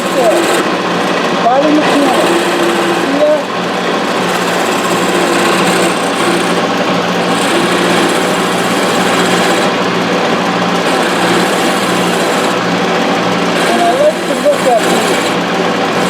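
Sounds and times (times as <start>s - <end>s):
lathe motor hum: 0.0s - 16.0s
hiss of wood being shaved: 1.8s - 3.5s, 13.6s - 15.4s.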